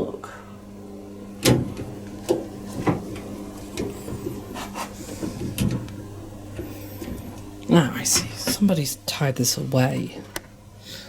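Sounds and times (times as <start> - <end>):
steady low hum: 0.0 - 11.0
light rubbing of plastic: 3.8 - 5.6.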